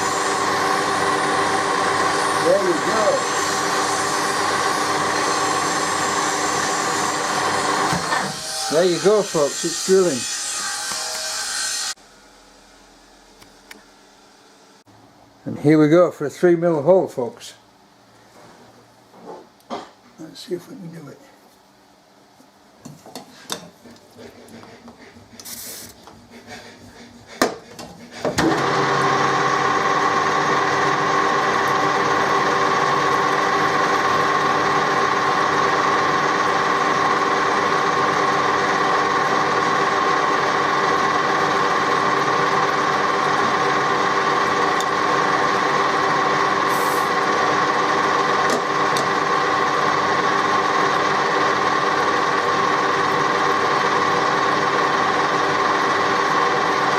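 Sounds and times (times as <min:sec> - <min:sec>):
electric drill drilling metal: 0:00.0 - 0:10.2, 0:28.4 - 0:56.9.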